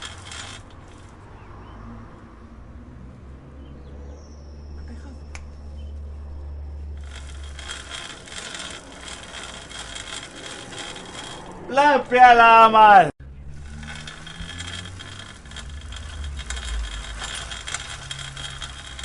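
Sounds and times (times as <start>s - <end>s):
bicycle drivetrain clicking: 0.0s - 1.2s, 7.0s - 12.2s, 13.4s - 19.0s.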